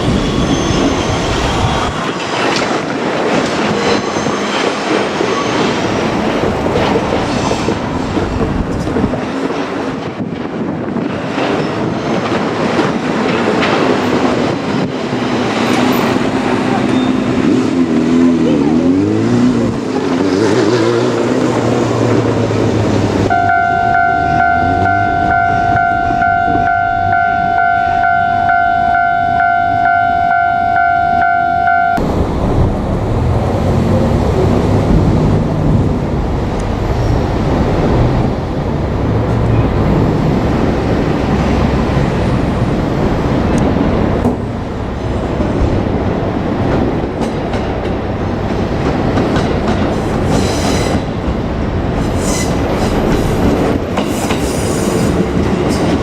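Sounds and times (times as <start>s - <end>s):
high squeals: 0.0s - 2.2s
train rumbling past: 0.0s - 56.0s
wheels clacking over rail joints: 1.9s - 23.3s, 32.0s - 56.0s
level crossing warning bell: 23.3s - 32.0s.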